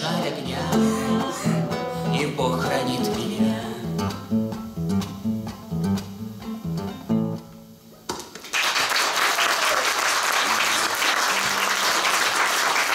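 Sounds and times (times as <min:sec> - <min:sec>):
acoustic guitar strumming chords: 0:00.0 - 0:08.1
audience applause: 0:08.3 - 0:12.9.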